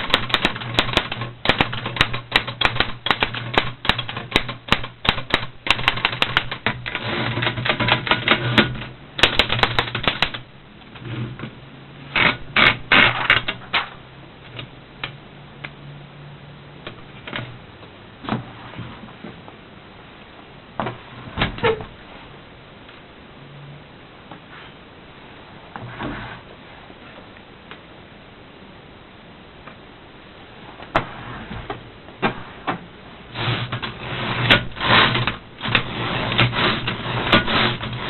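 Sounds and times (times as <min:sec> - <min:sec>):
manual typewriter keys striking: 0:00.0 - 0:10.4.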